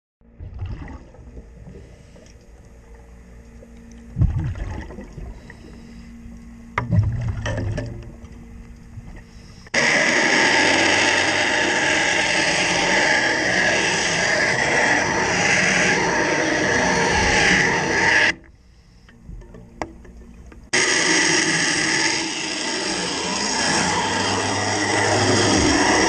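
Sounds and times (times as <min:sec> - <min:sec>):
underwater low rumbling: 0:00.2 - 0:09.7
steady low hum: 0:00.2 - 0:26.0.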